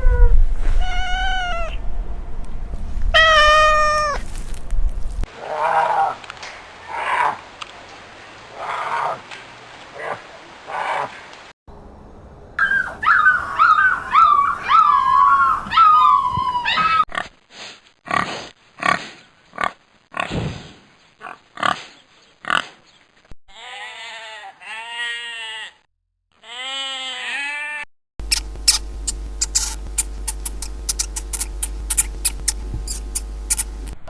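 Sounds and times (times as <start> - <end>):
drawn-out wavering animal cries: 5.3 - 7.6, 8.4 - 11.3, 12.6 - 17.1, 26.4 - 27.9
high chirping animal calls: 5.3 - 11.5, 12.6 - 17.0.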